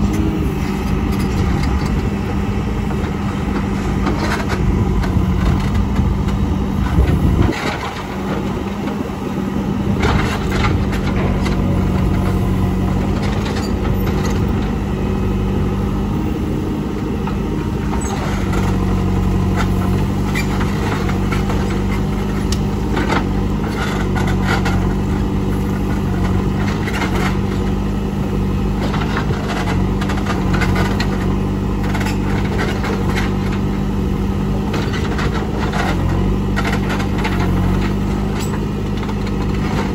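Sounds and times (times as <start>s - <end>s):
diesel engine running: 0.0s - 39.9s
knocks and clanks: 10.0s - 14.7s.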